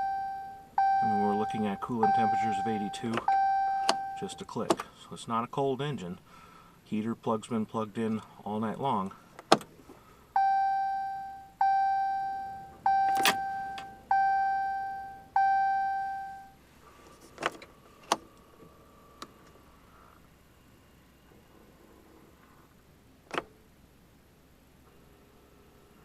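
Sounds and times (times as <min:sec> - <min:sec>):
truck warning chime: 0:00.0 - 0:04.4, 0:10.4 - 0:16.6.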